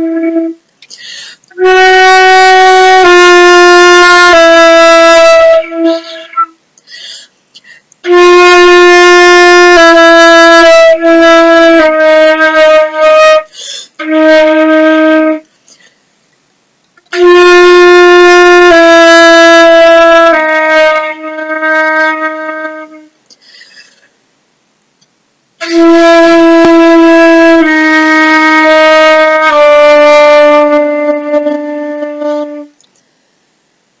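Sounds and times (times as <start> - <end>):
flute long held notes: 0.0 - 0.6, 1.5 - 6.6.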